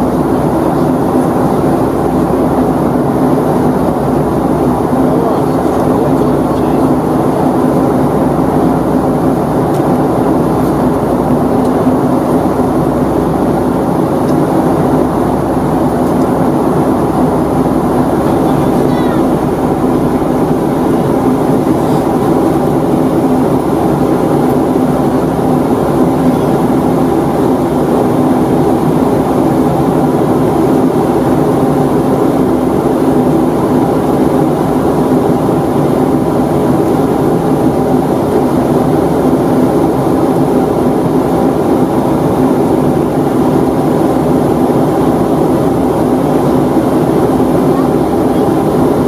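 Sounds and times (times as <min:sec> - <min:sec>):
jet engine drone: 0:00.0 - 0:49.0
steady tones: 0:01.8 - 0:29.0.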